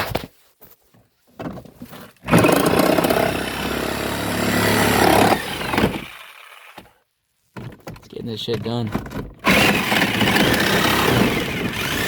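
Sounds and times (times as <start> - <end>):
power tool running: 2.3 - 6.8, 9.4 - 12.0.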